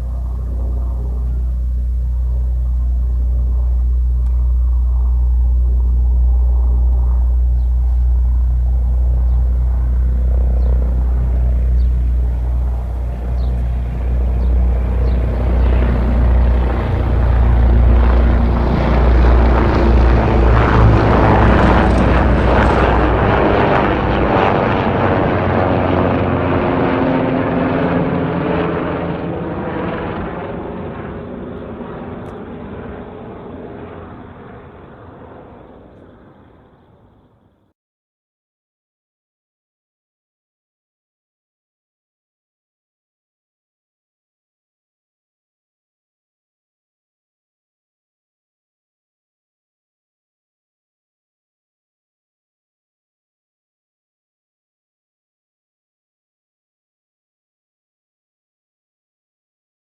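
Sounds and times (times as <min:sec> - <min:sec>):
helicopter flying past: 0:00.0 - 0:37.6.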